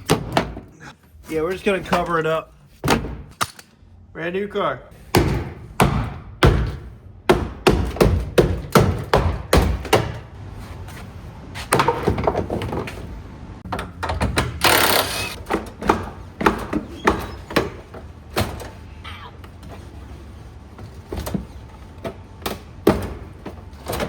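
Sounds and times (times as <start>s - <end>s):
knocks and thuds of car parts: 0.0s - 0.8s, 2.8s - 3.4s, 5.0s - 10.4s, 11.5s - 18.9s, 20.8s - 24.0s.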